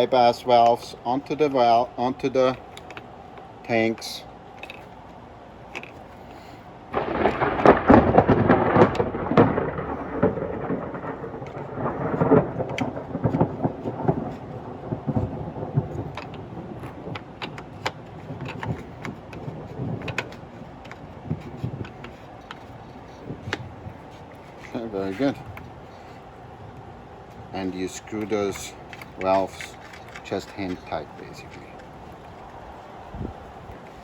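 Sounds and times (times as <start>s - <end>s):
valve scraping and crackling: 7.0s - 34.0s.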